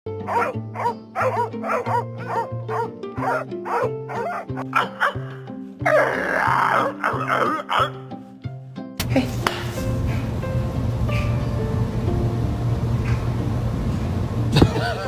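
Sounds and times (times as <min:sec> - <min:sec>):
dog barking rapidly: 0:00.3 - 0:06.1, 0:06.7 - 0:08.0
music with steady beat: 0:07.8 - 0:13.4.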